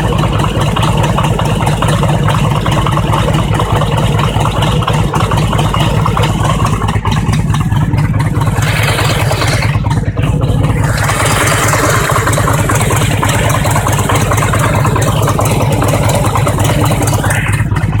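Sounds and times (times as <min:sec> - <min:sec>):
motorcycle engine idling with knock: 0:00.0 - 0:18.0.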